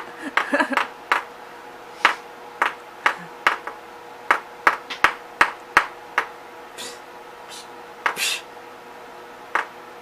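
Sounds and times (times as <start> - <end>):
person making sharp clicking noises: 6.8 - 8.5.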